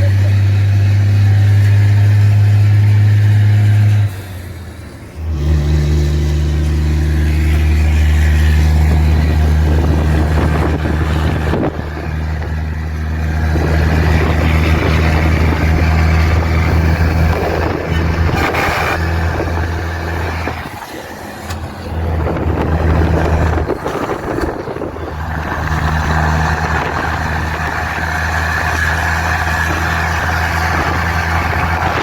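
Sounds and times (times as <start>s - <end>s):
truck engine through straight exhaust: 0.0s - 32.0s.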